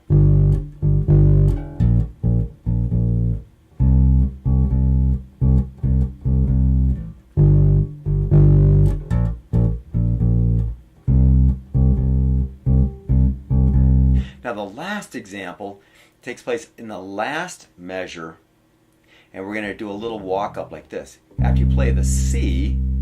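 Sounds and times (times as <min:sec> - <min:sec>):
bass guitar playing: 0:00.0 - 0:14.4, 0:20.0 - 0:20.8, 0:21.4 - 0:23.0.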